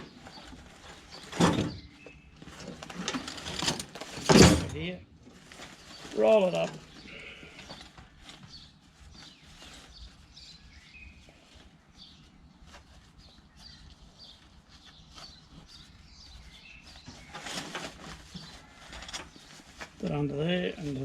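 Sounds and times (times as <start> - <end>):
birds chirping: 0.0 - 3.7, 4.7 - 21.0
canvas fabric rustling: 5.3 - 21.0.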